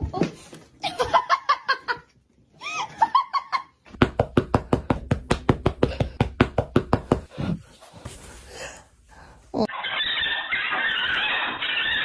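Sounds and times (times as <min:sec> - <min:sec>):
rapid knocks: 0:04.0 - 0:07.3.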